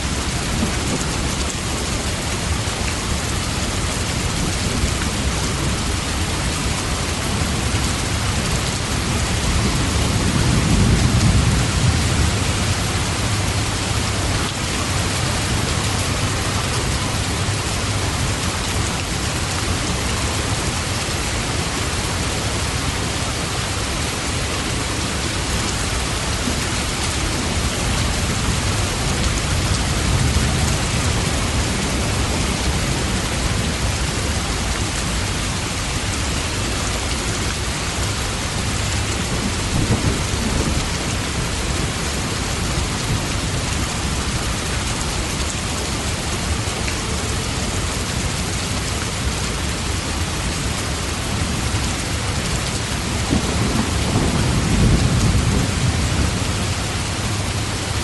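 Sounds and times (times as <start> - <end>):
steady rain: 0.0 - 58.0
thunder rumbling: 8.6 - 18.9, 52.8 - 57.6.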